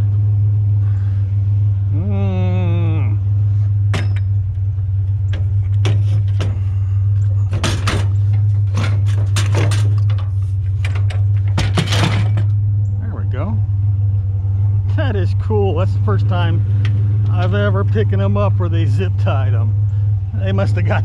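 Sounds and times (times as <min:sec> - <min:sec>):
truck engine idling: 0:00.0 - 0:21.0
metal bed frames clanking: 0:07.4 - 0:12.5.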